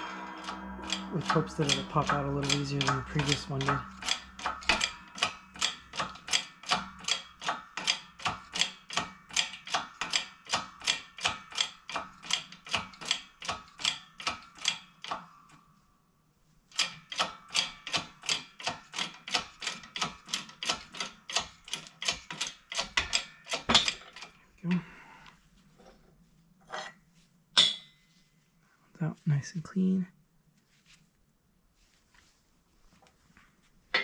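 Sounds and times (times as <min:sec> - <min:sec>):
ratchet wrench clicking: 0:00.4 - 0:15.2.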